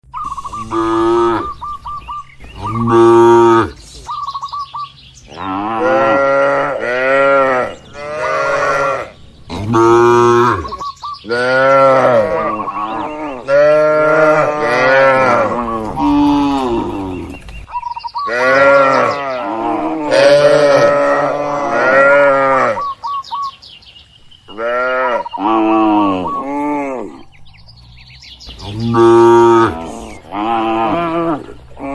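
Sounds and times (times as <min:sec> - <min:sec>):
cattle mooing: 0:00.5 - 0:01.6, 0:02.6 - 0:03.8, 0:05.3 - 0:17.4, 0:18.3 - 0:22.9, 0:28.6 - 0:31.9.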